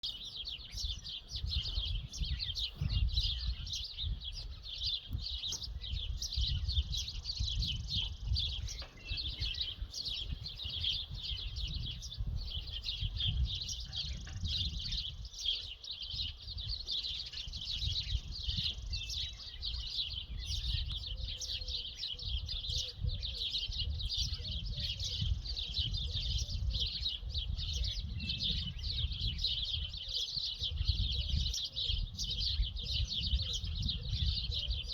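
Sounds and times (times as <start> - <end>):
small birds chirping: 0.0 - 34.9.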